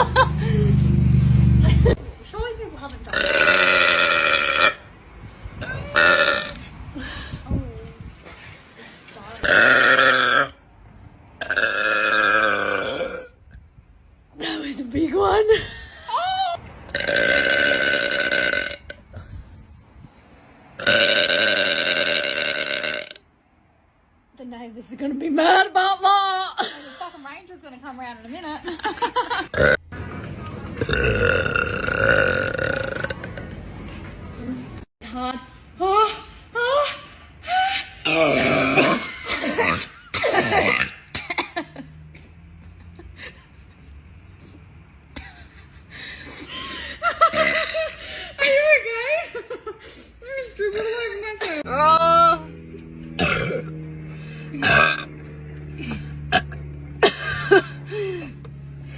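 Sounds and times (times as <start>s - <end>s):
laughter: 0.0s - 0.8s, 28.6s - 29.5s, 42.6s - 50.0s, 57.0s - 58.3s
woman burping loudly: 3.1s - 4.9s, 5.6s - 6.7s, 9.4s - 10.6s, 11.4s - 13.4s, 16.9s - 19.1s, 20.8s - 23.2s, 29.5s - 29.8s, 30.8s - 33.5s, 38.0s - 41.6s, 47.2s - 48.0s, 53.2s - 53.7s, 54.6s - 55.1s, 56.3s - 57.2s.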